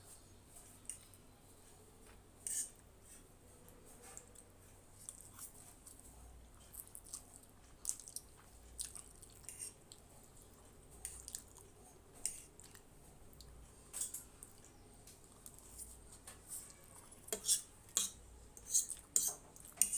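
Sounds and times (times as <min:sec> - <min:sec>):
close chewing of noodles: 0:04.4 - 0:13.5.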